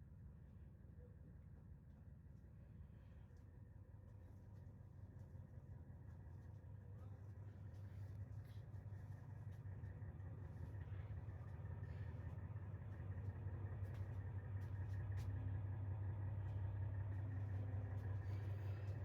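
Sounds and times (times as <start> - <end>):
bus engine idling: 3.8 - 19.0.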